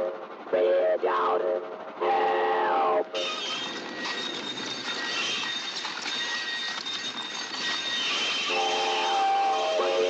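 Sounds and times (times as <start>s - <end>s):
rushing rattling train noise: 0.0s - 10.0s
faint high squeal: 3.2s - 10.0s.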